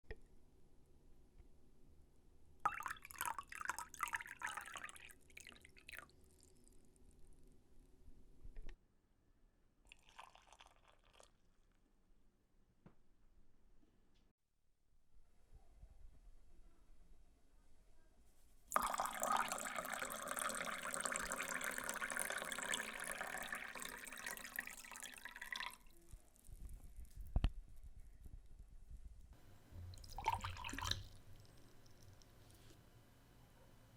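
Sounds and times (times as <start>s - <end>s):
water pouring and splashing: 18.7s - 25.9s, 29.9s - 32.2s.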